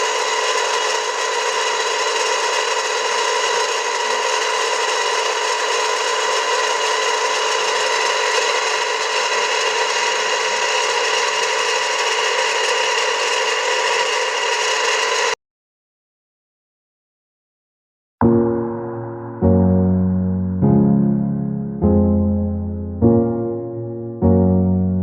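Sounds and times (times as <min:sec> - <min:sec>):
water pump motor grinding: 0:00.0 - 0:15.4.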